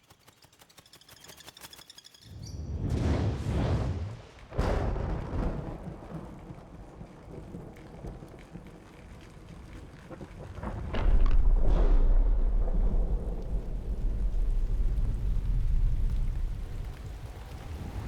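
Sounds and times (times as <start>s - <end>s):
deep rumbling booms: 10.6s - 17.2s.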